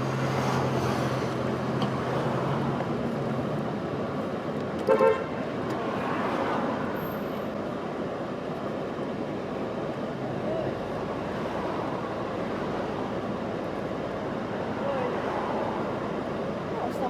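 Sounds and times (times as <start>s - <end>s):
street traffic noise: 0.0s - 17.0s
car horn tooting: 4.8s - 5.4s.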